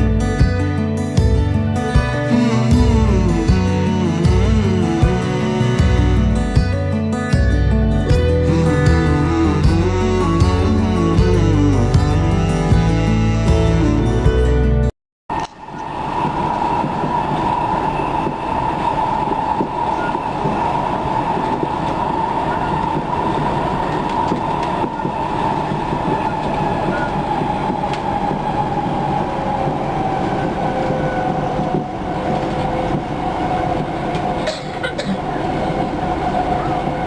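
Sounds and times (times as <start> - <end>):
train wheels rumbling on rails: 0.0 - 6.7, 15.3 - 37.0.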